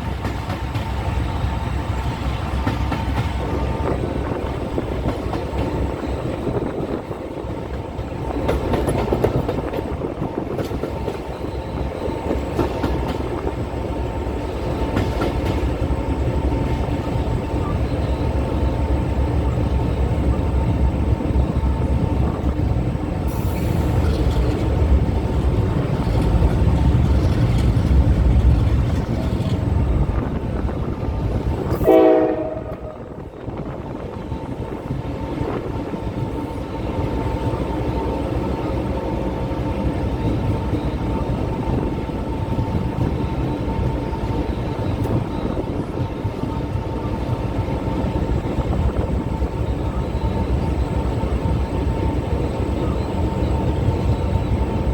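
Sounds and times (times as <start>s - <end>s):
train rumbling on tracks: 0.0s - 54.9s
train horn blast: 31.6s - 33.2s.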